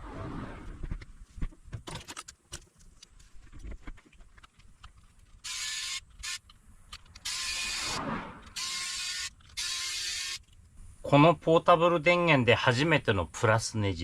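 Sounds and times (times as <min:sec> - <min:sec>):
clicks and knocks of parts handled: 0:01.4 - 0:07.3
electric screwdriver whining: 0:05.4 - 0:06.5, 0:07.2 - 0:08.0, 0:08.6 - 0:10.5.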